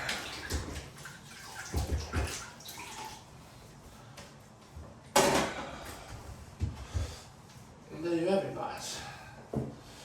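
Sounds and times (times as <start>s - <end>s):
sponge splashing in bucket of water: 0.0s - 3.2s.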